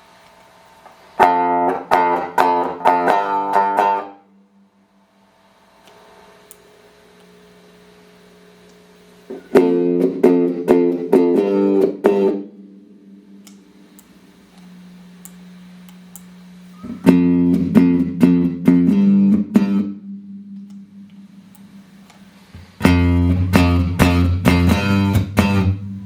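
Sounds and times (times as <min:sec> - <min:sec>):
clean electric guitar chords: 0:01.2 - 0:06.6, 0:09.3 - 0:15.0, 0:16.8 - 0:22.0, 0:22.6 - 0:26.0.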